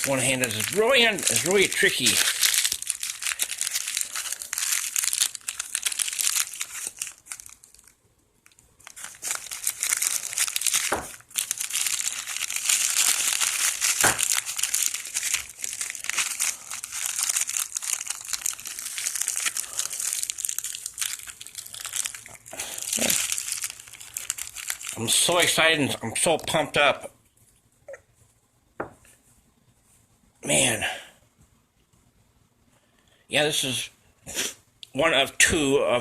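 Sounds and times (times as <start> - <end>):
plastic packaging crinkling: 0.0 - 25.8.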